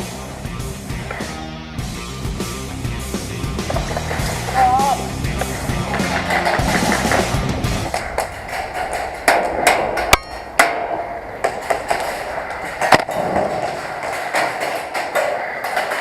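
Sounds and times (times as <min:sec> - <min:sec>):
steady background hiss: 0:08.0 - 0:16.0.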